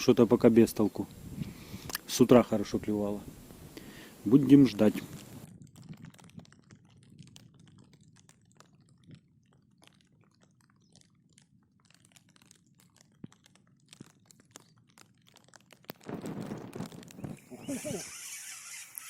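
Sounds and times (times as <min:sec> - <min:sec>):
raindrops ticking on a surface: 0:00.0 - 0:19.0
loud rustle: 0:16.0 - 0:19.0.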